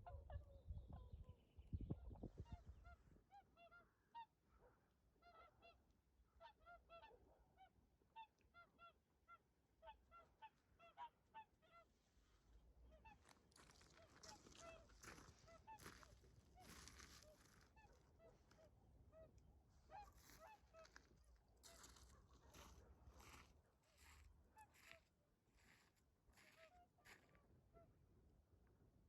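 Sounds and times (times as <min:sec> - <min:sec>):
distant swans honking: 0:13.0 - 0:18.6.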